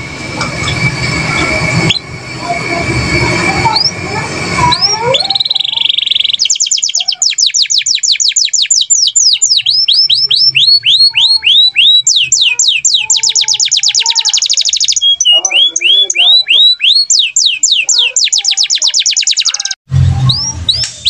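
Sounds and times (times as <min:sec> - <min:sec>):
rush of noise: 0:00.0 - 0:06.9
canary singing: 0:00.0 - 0:21.0.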